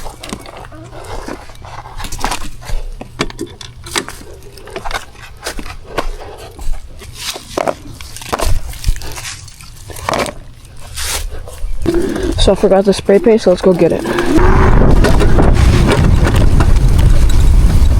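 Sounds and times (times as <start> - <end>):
footsteps crunching dry leaves: 5.4 - 10.1
low steady rumble: 8.0 - 17.9.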